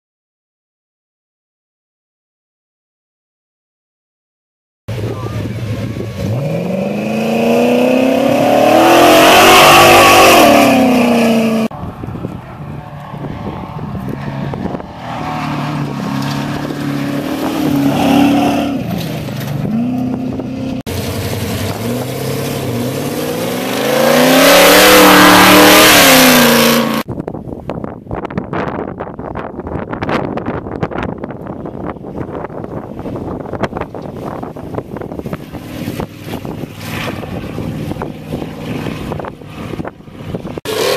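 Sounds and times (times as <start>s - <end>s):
race truck engine passing by: 4.9s - 27.1s
engines revving through gears: 5.4s - 11.7s, 13.8s - 27.1s, 36.0s - 40.9s.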